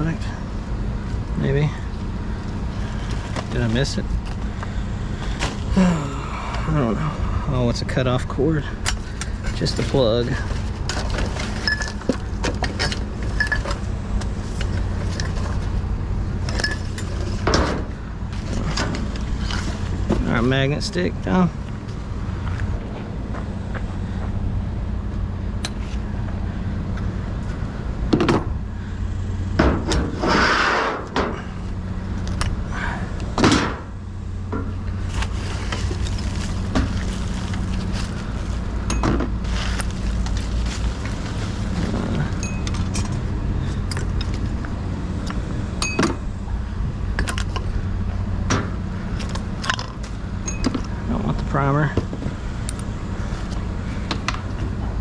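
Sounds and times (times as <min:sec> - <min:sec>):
vehicle engine idling hum: 0:00.0 - 0:55.0
scrap clinking and scraping: 0:08.8 - 0:15.8, 0:16.4 - 0:20.2, 0:34.6 - 0:46.2.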